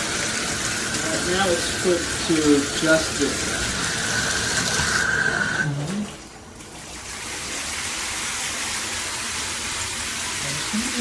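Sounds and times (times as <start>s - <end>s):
water spraying from shower head: 0.0s - 6.0s.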